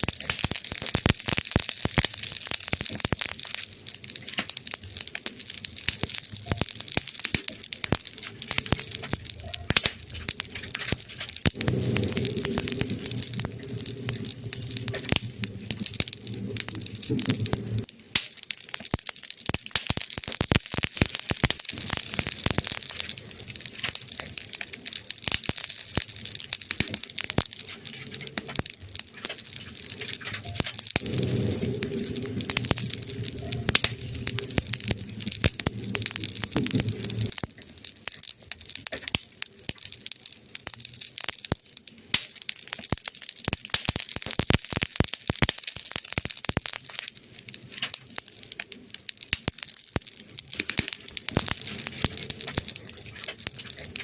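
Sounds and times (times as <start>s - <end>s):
campfire crackling and popping: 0.0s - 54.0s
low rumble: 8.0s - 17.9s, 27.4s - 37.4s.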